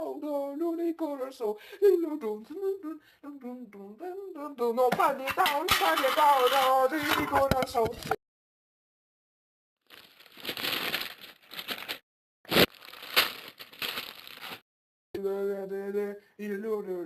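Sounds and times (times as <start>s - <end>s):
harsh crackling noise: 9.8s - 14.6s.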